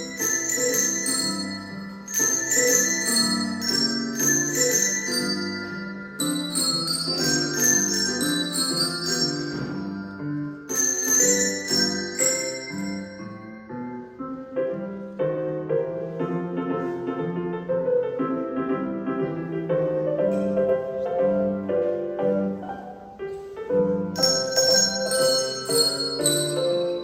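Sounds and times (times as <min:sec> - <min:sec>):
handbells ringing: 0:00.0 - 0:13.7, 0:24.2 - 0:27.0
piano accompaniment: 0:00.0 - 0:27.0.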